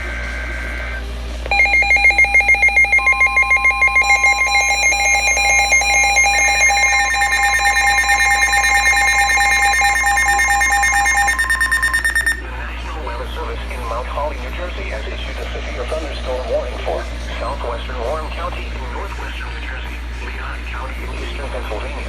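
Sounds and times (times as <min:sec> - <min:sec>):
two-tone data warble: 0:00.0 - 0:12.5
rapidly pulsing alert beep: 0:01.5 - 0:12.4
steady alarm tone: 0:01.5 - 0:12.5.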